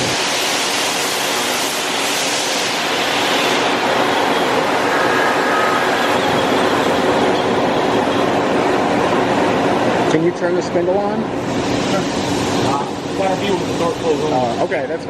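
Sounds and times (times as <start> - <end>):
machine rushing noise: 0.0 - 10.0
faint machine whine: 3.6 - 8.9, 11.3 - 15.0.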